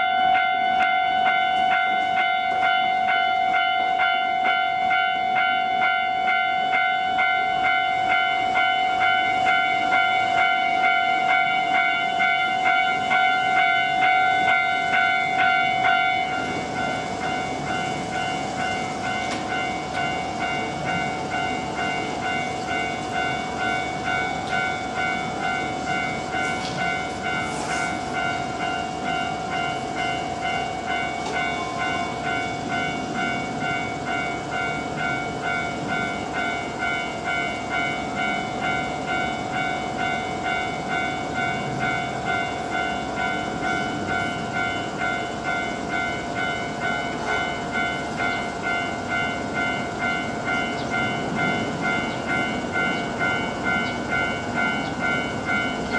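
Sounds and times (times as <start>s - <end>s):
level-crossing warning bell chiming: 0.0s - 55.9s
train rumbling past: 0.0s - 55.9s
train wheels clicking on rail joints: 0.7s - 55.9s.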